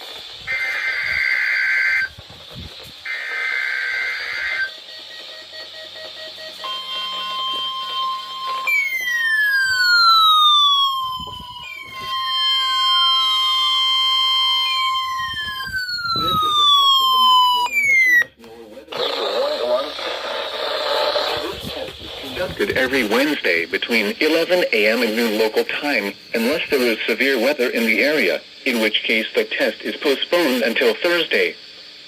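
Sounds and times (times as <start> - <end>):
screeching digital data bursts: 0.1 - 31.6
long alert tone: 6.6 - 18.3
siren falling sweep: 6.7 - 18.3.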